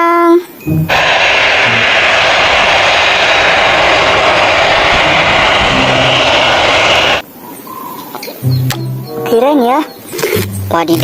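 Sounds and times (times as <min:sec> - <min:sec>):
jet engine rushing hiss: 0:00.9 - 0:07.2.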